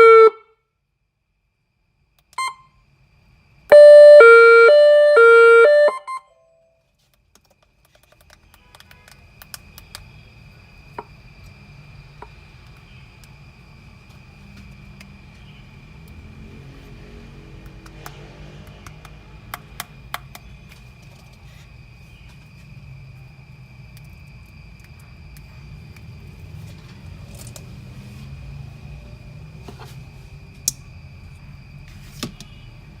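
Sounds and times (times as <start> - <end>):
faint high-pitched tone: 3.7 - 6.8.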